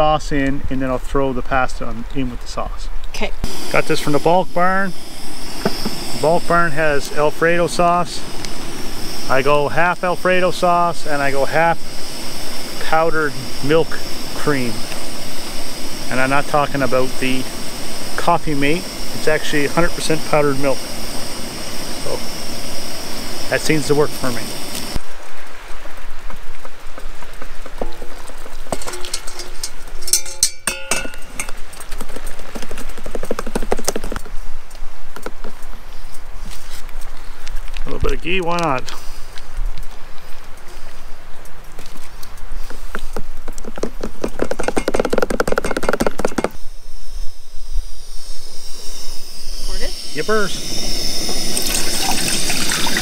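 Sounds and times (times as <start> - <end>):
utensil clinking in metal pot: 28.7 - 31.6.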